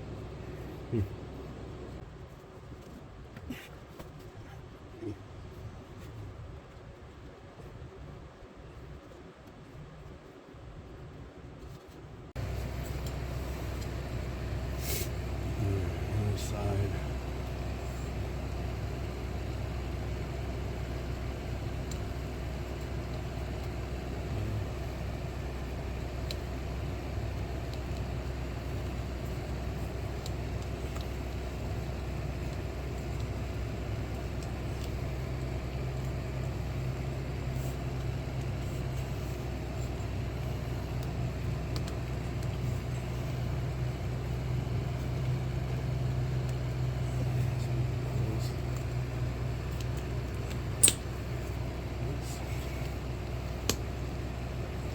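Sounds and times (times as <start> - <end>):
machinery hum: 0.0 - 11.3, 12.3 - 54.9
deep drone: 12.4 - 54.9.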